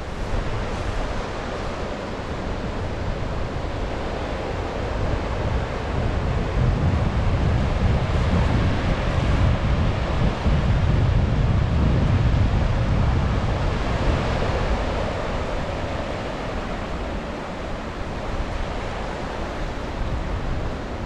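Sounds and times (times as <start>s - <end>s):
waves washing onto shore: 0.0s - 21.0s
wind on microphone: 0.0s - 21.0s.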